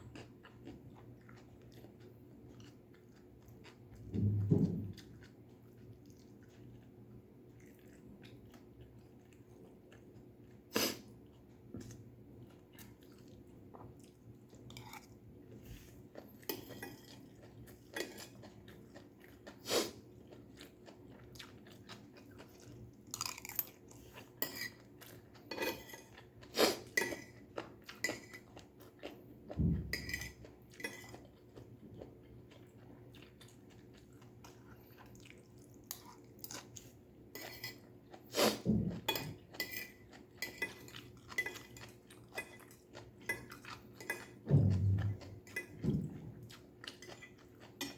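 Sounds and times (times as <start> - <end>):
chewing and crunching vegetables: 0.0 - 47.9
cutlery clinking against dish: 39.0 - 44.4.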